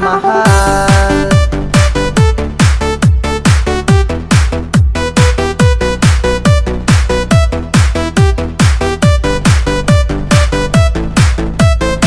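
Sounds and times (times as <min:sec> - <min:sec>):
short synth notes: 0:00.0 - 0:01.6
kick drum beat: 0:00.5 - 0:12.0.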